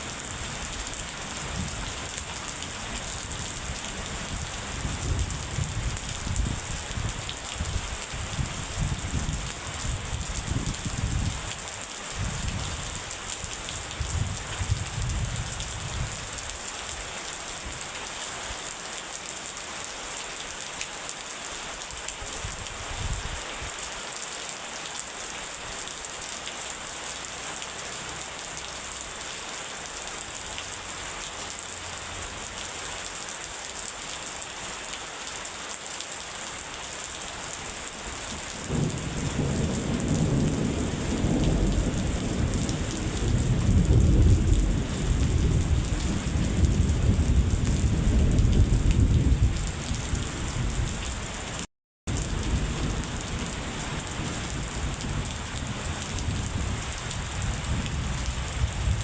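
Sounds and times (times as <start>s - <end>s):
rain hissing: 37.3s - 49.8s
thunder rumbling: 38.6s - 51.1s, 57.4s - 59.0s.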